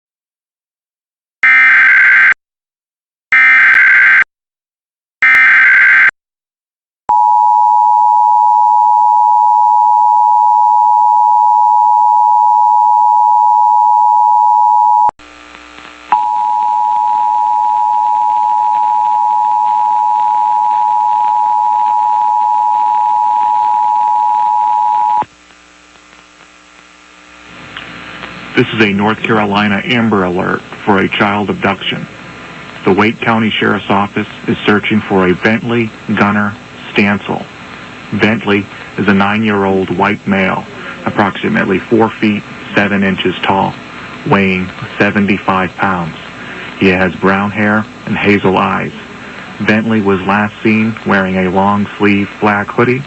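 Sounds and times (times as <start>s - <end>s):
low hum and noise: 7.1s - 53.0s
two-tone attention signal: 16.1s - 25.2s.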